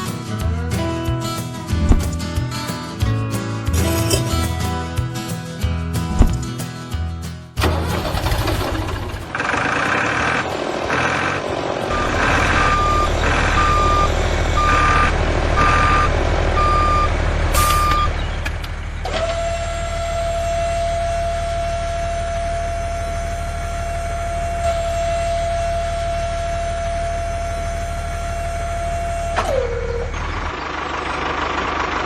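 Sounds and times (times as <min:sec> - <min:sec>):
low engine rumble: 0:00.0 - 0:32.0
reversing alarm beeping: 0:10.9 - 0:18.4.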